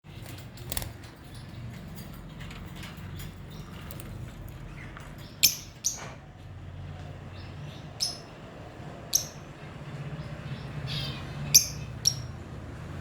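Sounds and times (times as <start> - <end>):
small birds chirping: 0.1 - 13.0
loud sharp bird calls: 7.3 - 12.5.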